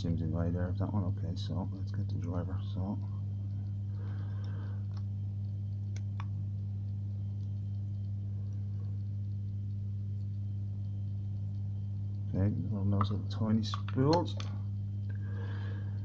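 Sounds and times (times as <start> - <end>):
low electrical hum: 0.0 - 16.0
faint small clicks: 3.0 - 12.2.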